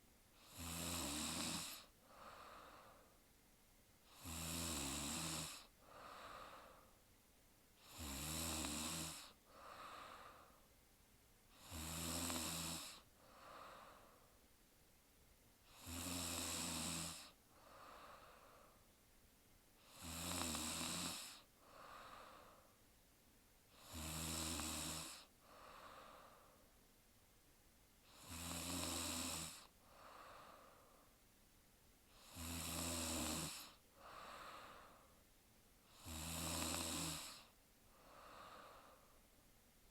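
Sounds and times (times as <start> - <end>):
woman snoring: 0.4 - 3.0, 4.1 - 6.8, 7.8 - 10.6, 11.5 - 14.2, 15.7 - 18.7, 19.8 - 22.6, 23.7 - 26.5, 28.1 - 30.8, 32.1 - 35.1, 35.9 - 39.1.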